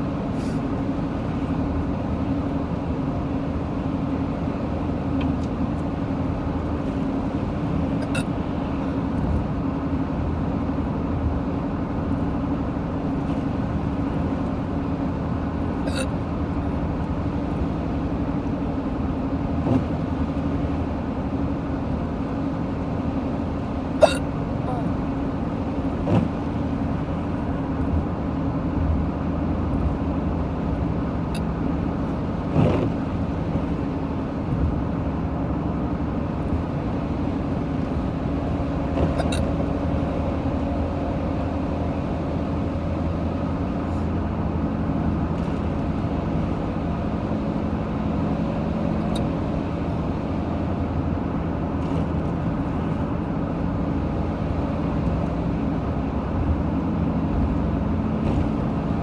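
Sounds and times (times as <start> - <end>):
car engine and road noise: 0.0 - 59.0
short hiccups: 8.0 - 8.5, 15.8 - 16.2, 23.9 - 25.0, 39.0 - 39.5.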